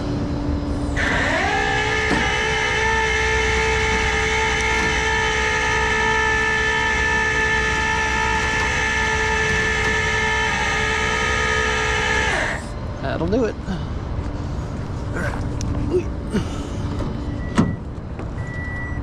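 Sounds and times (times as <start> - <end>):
hydraulic pump whining: 0.0 - 19.0.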